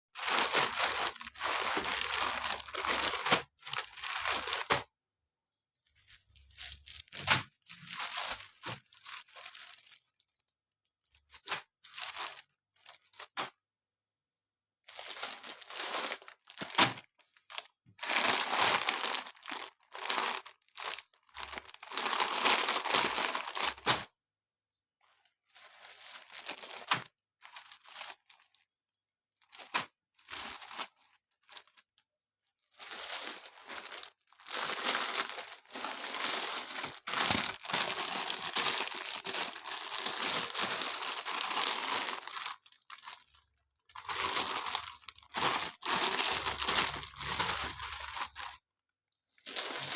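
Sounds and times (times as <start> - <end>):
packaging rustling and tearing: 32.8 - 48.6.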